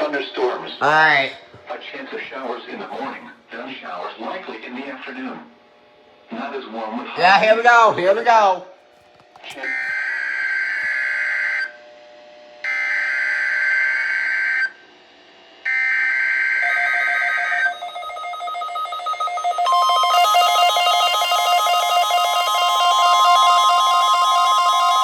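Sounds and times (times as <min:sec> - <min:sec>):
high warning alarm tone: 0:09.6 - 0:11.7, 0:15.7 - 0:25.0
pulsing alert beeps: 0:16.6 - 0:25.0.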